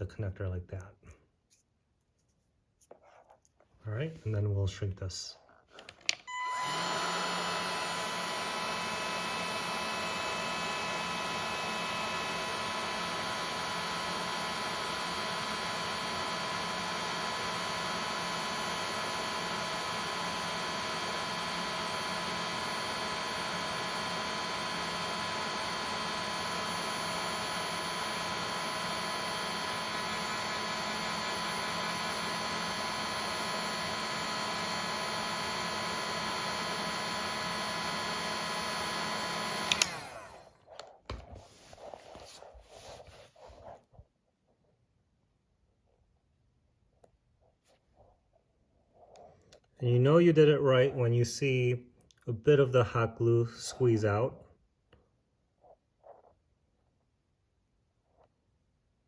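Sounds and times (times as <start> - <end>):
heat gun blowing air with whine: 5.8 - 40.5.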